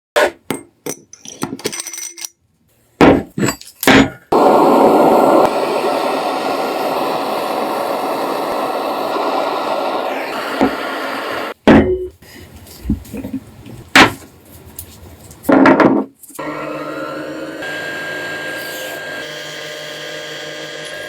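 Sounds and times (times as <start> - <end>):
metal parts clinking: 0.8 - 2.4, 3.4 - 3.9.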